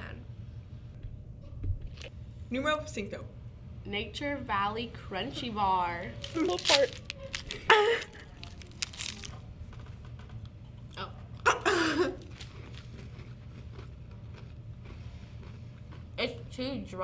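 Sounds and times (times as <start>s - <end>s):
wrapper crinkling: 6.1s - 9.4s
granola bar crunching: 6.2s - 9.4s, 12.2s - 13.9s.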